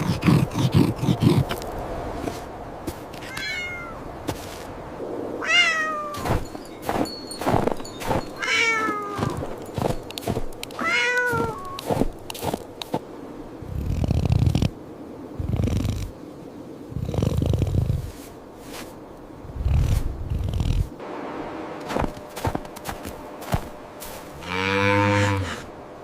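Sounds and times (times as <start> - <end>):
cat meowing: 3.2 - 4.0, 5.4 - 6.2, 8.4 - 9.4, 10.8 - 11.8.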